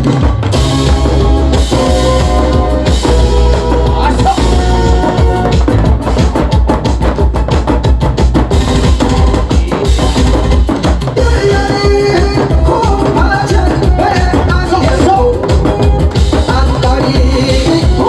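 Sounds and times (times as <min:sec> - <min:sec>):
music melody line: 0:00.0 - 0:10.3
heavy drum beat with bass: 0:00.0 - 0:18.0.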